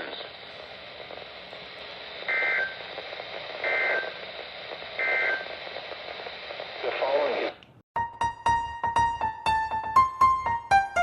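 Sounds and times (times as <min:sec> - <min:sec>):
radio hiss: 0:00.0 - 0:07.6.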